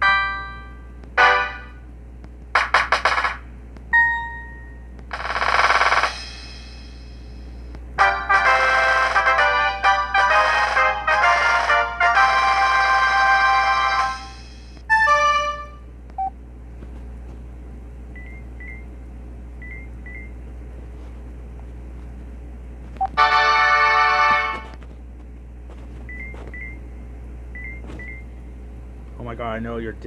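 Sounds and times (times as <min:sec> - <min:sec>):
phone musical ringtone: 0:00.0 - 0:01.7, 0:08.0 - 0:15.8.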